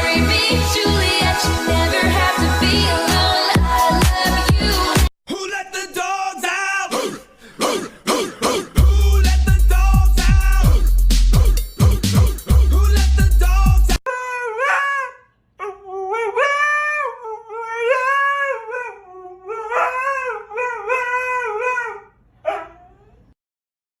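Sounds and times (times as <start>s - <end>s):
dog yelp: 14.1s - 17.2s, 19.7s - 23.4s
dog howling: 14.1s - 23.3s.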